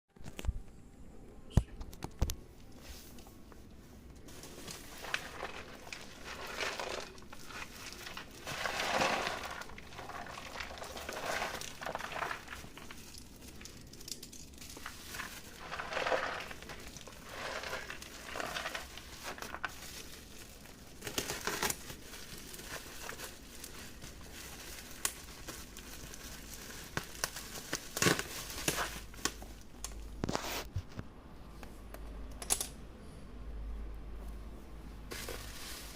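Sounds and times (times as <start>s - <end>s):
packaging crinkling and tearing: 4.3s - 30.8s.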